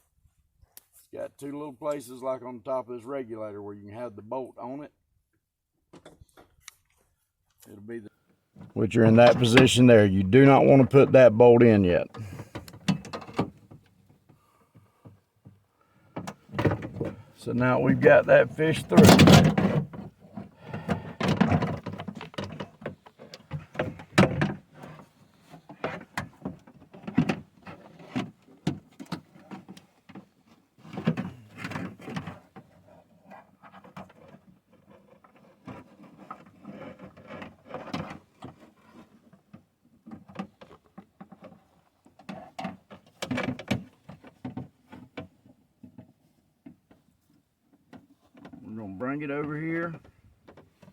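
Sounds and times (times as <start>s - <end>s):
metal parts clunking in car door: 18.0s - 20.0s.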